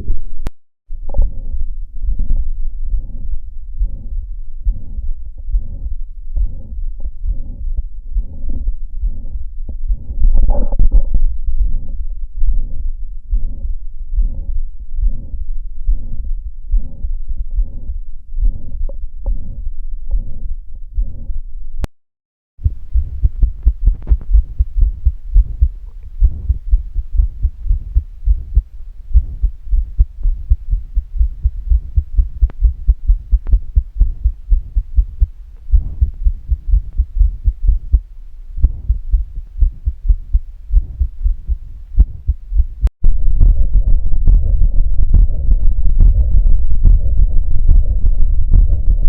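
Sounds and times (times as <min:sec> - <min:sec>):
heartbeat thuds: 0:02.1 - 0:20.4, 0:22.6 - 0:42.9.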